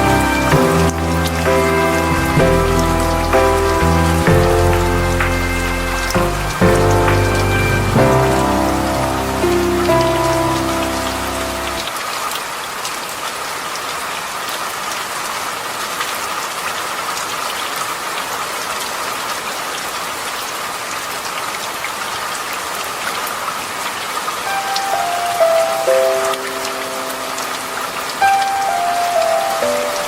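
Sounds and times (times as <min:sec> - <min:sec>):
soft music notes: 0:00.0 - 0:11.9
steady rain falling: 0:00.0 - 0:30.0.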